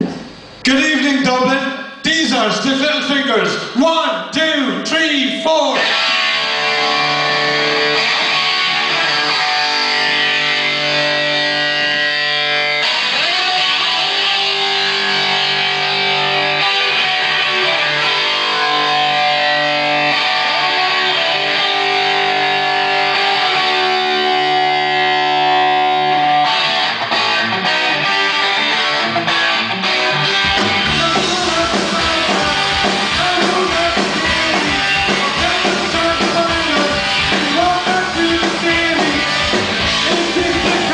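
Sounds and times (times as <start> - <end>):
drums driving beat: 0.0 - 0.6, 30.3 - 40.9
bass guitar: 0.0 - 0.8, 5.6 - 40.9
distorted electric guitar: 0.0 - 40.9.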